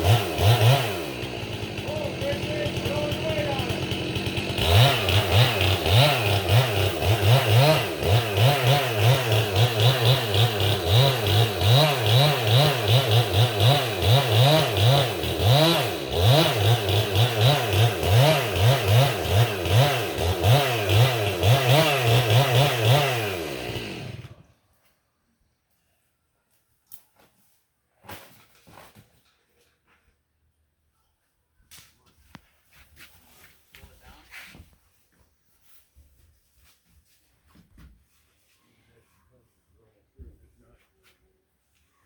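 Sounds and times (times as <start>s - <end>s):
chainsaw running at high revs: 0.0s - 24.5s.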